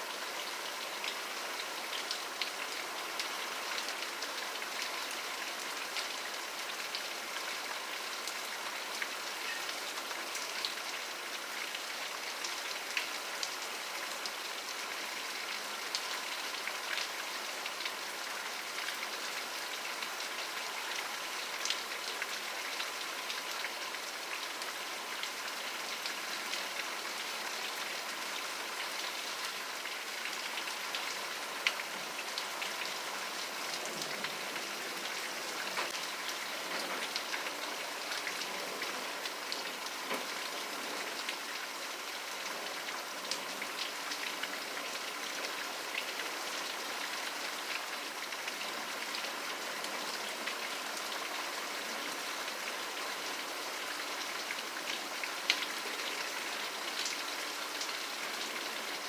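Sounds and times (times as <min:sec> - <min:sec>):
steady rain hiss: 0:00.0 - 0:59.0
raindrops ticking on a surface: 0:08.2 - 0:52.9, 0:53.6 - 0:59.0.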